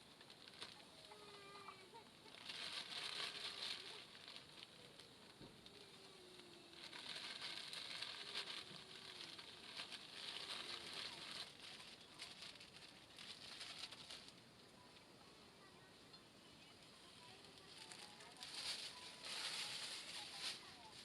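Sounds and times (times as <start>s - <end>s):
faint campfire crackling: 0.0s - 21.0s.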